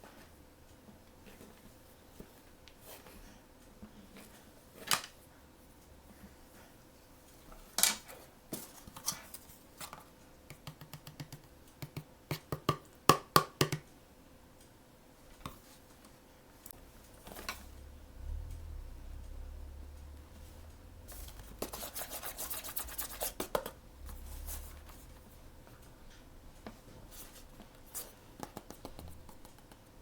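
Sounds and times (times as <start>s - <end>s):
sharp clicks and taps: 9.9s - 14.0s, 28.4s - 30.0s
faint low rumble: 16.7s - 21.8s, 23.8s - 26.6s.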